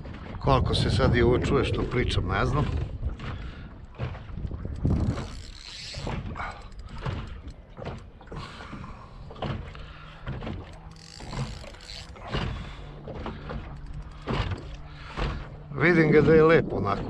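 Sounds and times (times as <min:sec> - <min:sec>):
wind buffeting microphone: 0:00.0 - 0:17.0
knocks and rattles: 0:02.5 - 0:08.6.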